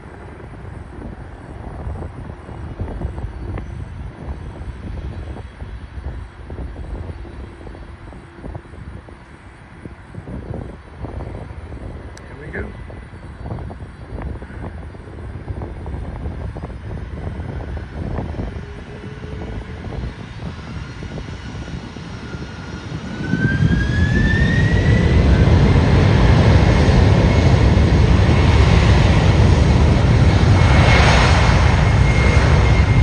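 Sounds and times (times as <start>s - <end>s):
jet engines spooling up: 13.7s - 33.0s.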